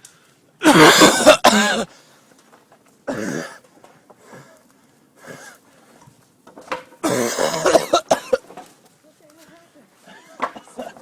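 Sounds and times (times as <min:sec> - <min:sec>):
man coughing: 0:00.6 - 0:01.9, 0:07.0 - 0:08.4.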